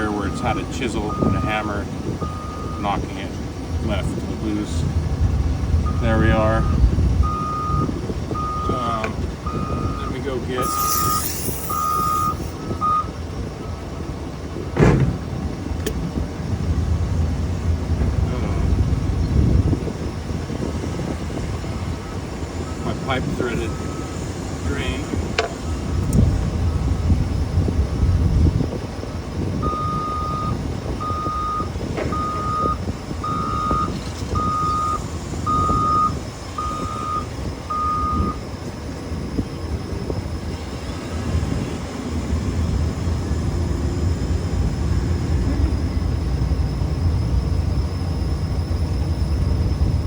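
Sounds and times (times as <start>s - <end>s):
reversing alarm beeping: 0.2s - 3.0s, 5.8s - 13.8s, 21.7s - 27.0s, 29.6s - 38.6s.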